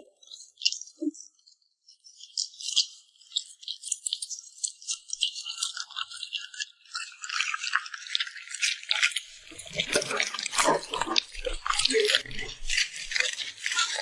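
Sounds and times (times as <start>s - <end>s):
puppy chewing and lip smacking: 5.0s - 14.0s.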